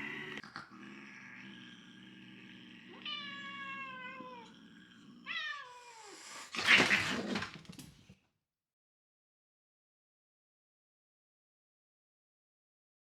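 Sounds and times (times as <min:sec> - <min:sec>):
cat hissing: 0:00.0 - 0:07.7
cat growling: 0:00.0 - 0:08.1
cat yowling: 0:02.9 - 0:04.5, 0:05.2 - 0:07.0.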